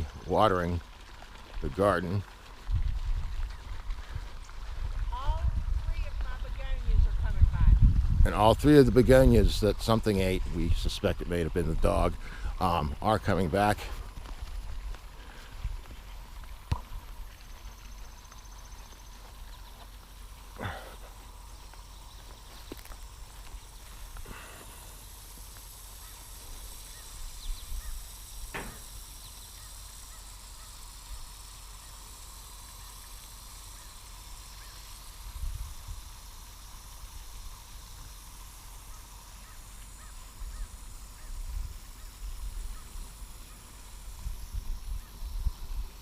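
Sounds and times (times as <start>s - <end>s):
wind buffeting microphone: 2.6s - 13.1s, 35.3s - 36.2s.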